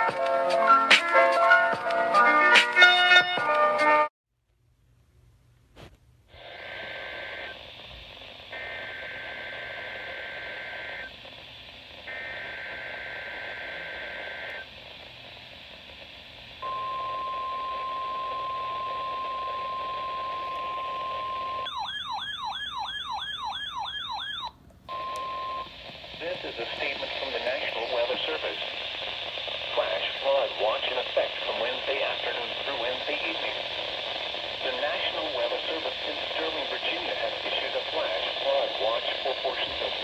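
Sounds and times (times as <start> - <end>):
radio hiss: 5.8 - 21.7, 24.9 - 40.0
warbling siren tone: 21.6 - 24.5.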